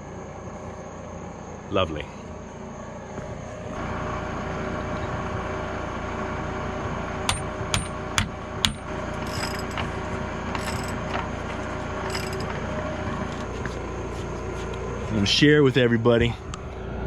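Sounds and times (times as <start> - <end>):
steady mechanical hum: 0.0 - 17.0
sharp knocks: 7.3 - 10.0.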